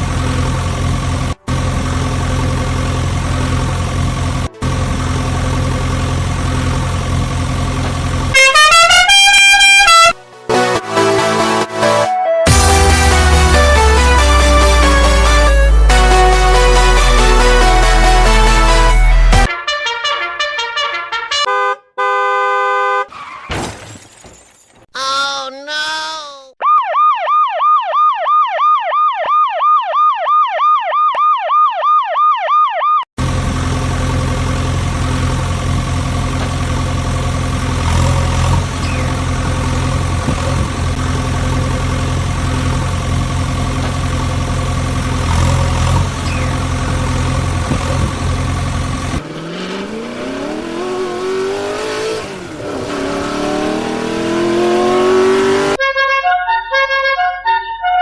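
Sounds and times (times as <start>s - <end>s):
low engine drone: 0.0s - 8.6s, 12.5s - 19.5s
fast warbling siren: 26.6s - 33.0s.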